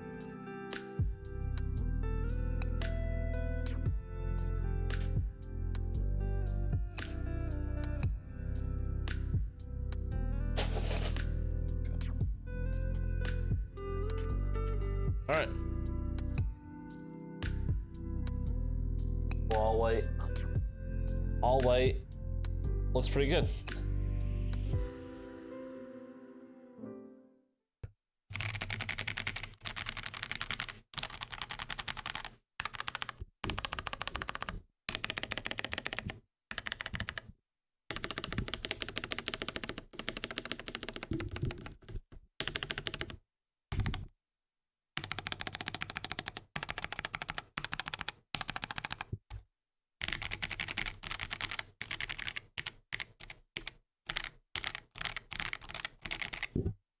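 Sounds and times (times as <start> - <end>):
mechanical keyboard typing: 28.3 - 37.3, 37.9 - 43.2, 45.0 - 49.1, 50.0 - 56.6.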